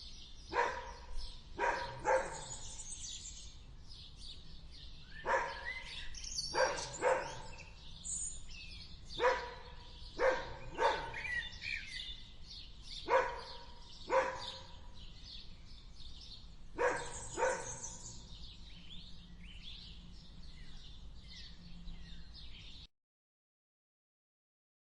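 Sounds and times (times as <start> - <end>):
birds chirping: 0.0 - 22.9
dog barking: 0.5 - 2.8, 5.2 - 7.7, 9.1 - 11.6, 13.0 - 14.8, 16.8 - 18.1.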